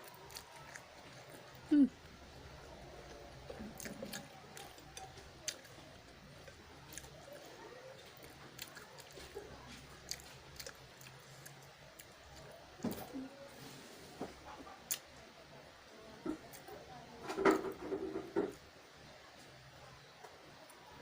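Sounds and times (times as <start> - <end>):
person chewing noodles: 0.0 - 12.5.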